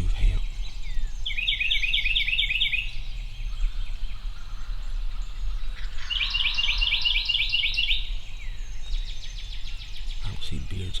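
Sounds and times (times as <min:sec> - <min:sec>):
steady low rumble: 0:00.0 - 0:01.4
songbird chirping: 0:00.0 - 0:11.0.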